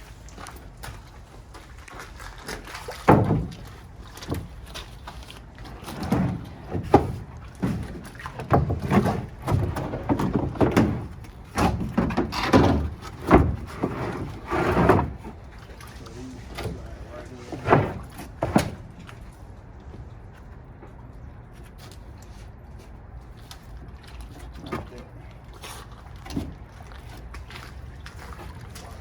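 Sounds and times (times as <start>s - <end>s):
sharp wooden thunk: 3.1s - 3.6s
wood-on-wood knocks: 3.1s - 3.7s
drawer sliding scrapes: 8.6s - 15.4s, 16.6s - 18.9s.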